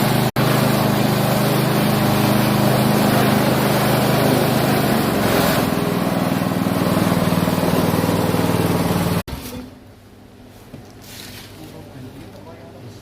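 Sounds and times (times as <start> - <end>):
machine motor drone: 0.0 - 9.3.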